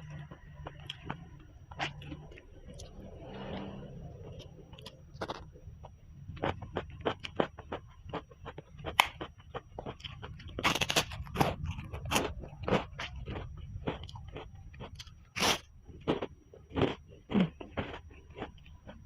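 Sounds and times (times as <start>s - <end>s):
crunching and chewing food: 0.0s - 19.0s.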